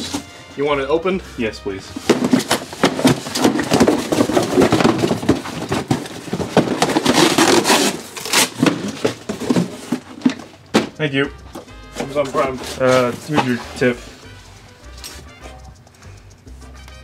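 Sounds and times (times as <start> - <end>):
cardboard packaging rustling and tearing: 2.0 - 10.6, 12.0 - 14.2.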